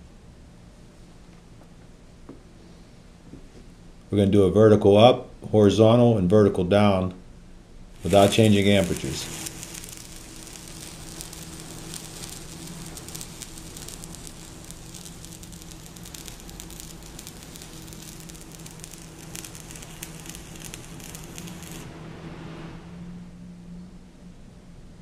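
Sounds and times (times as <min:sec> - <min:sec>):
steady low hum: 0:00.0 - 0:25.0
welding arc crackling and sizzling: 0:07.9 - 0:22.0.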